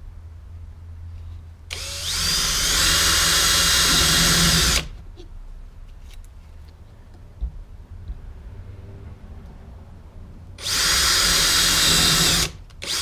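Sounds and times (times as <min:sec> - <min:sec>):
faint low rumble: 0:00.0 - 0:02.6, 0:04.5 - 0:10.8
power tool cutting plastic: 0:10.6 - 0:13.0.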